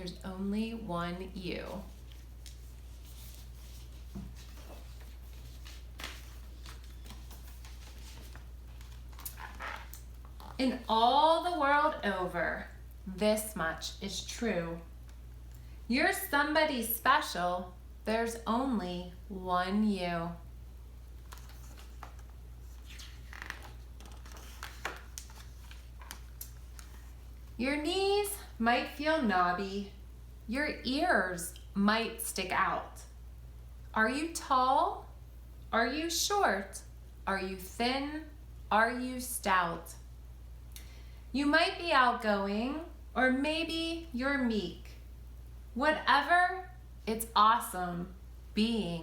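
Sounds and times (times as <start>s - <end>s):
low electrical hum: 0.0s - 49.0s
book pages rustling: 1.7s - 10.8s, 21.1s - 27.6s.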